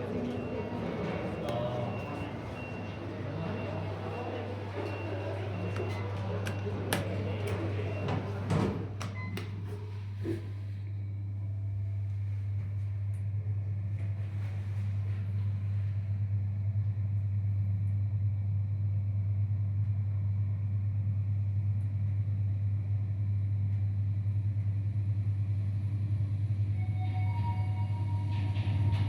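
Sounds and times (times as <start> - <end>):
elevator chime tones: 0.0 - 8.4, 26.7 - 29.0
elevator low rumble: 0.0 - 29.0.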